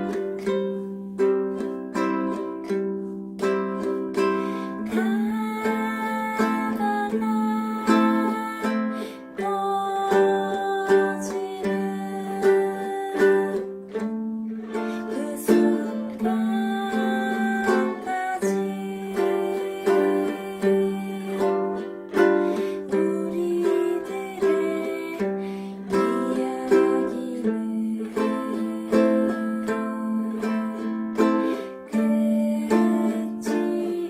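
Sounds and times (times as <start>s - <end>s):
ukulele strumming: 0.0s - 34.0s.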